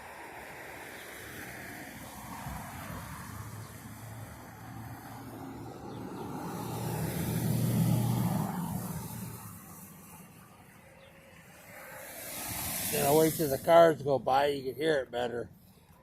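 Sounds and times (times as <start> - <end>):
car driving past: 0.8 - 13.9.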